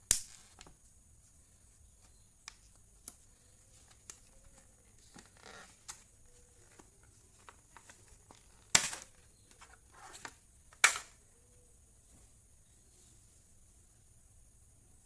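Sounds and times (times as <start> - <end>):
soft rustle: 0.5 - 14.3
tools clicking and tapping: 10.7 - 11.2.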